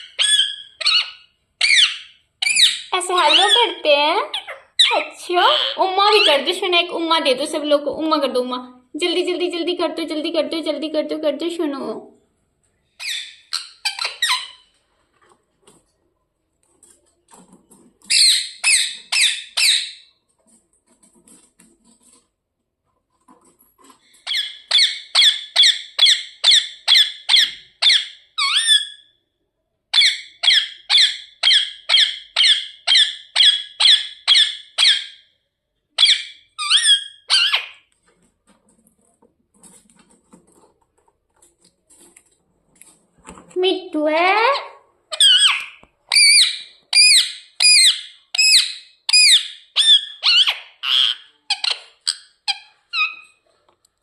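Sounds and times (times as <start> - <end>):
parrot chirping: 0.0 - 6.6, 12.9 - 14.8, 18.0 - 20.2, 24.2 - 29.2, 29.9 - 35.3, 36.0 - 37.9, 44.5 - 53.5.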